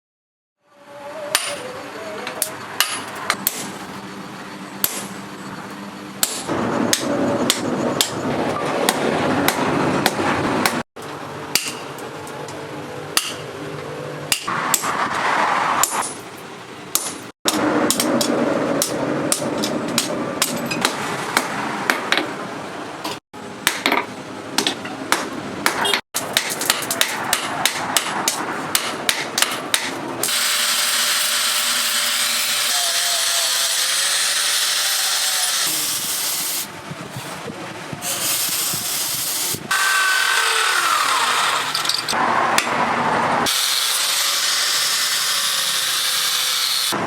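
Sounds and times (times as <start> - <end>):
steady background noise: 0.6 - 47.0
hammer striking steel on anvil: 1.3 - 1.6, 2.4 - 3.7, 4.8 - 5.1, 11.5 - 12.0, 13.2 - 13.5, 14.3 - 14.9, 23.6 - 32.6.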